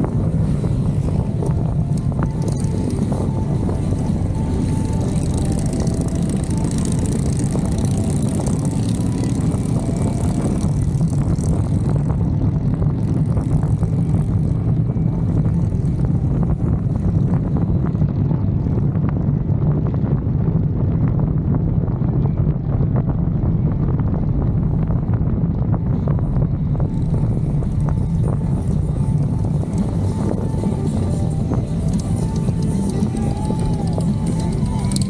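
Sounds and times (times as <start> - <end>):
motorcycle engines rumbling: 0.0 - 35.0
wind buffeting microphone: 0.0 - 35.0.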